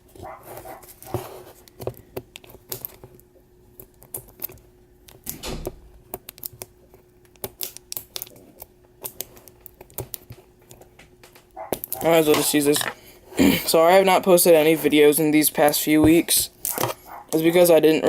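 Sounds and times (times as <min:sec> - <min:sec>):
faint steady hum: 0:00.0 - 0:18.0
hands handling small objects: 0:06.1 - 0:13.0.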